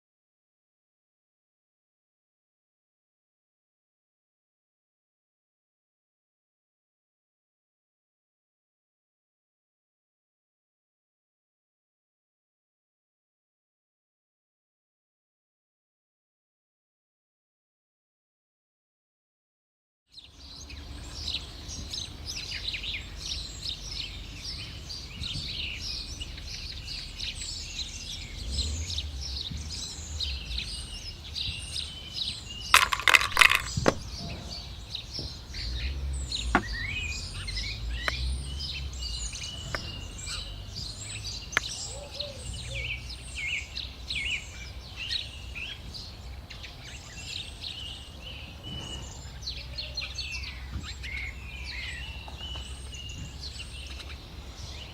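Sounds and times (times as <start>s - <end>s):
small birds chirping: 20.1s - 54.9s
rattle of sharp clicks: 32.8s - 34.2s.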